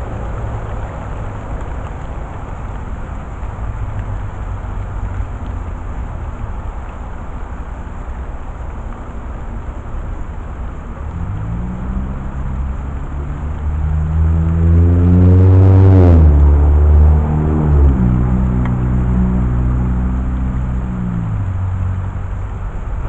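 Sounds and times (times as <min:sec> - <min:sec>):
vehicle engine: 0:00.0 - 0:23.0
low rumble: 0:10.2 - 0:23.0.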